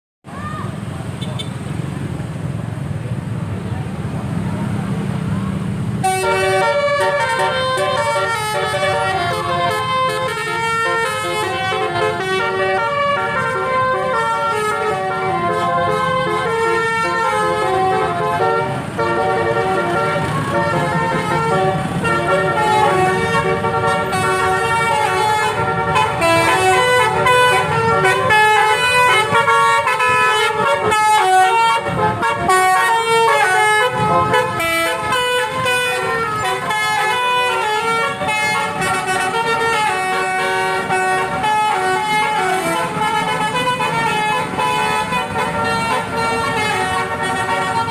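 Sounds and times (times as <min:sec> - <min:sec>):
bus engine rumbling: 0:00.2 - 0:47.9
musical air horn melody: 0:06.0 - 0:47.9.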